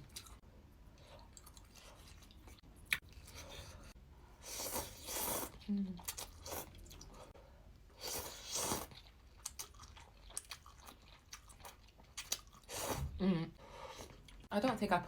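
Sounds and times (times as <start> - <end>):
person chewing and crunching: 0.0 - 3.9, 4.5 - 7.3, 8.0 - 13.1.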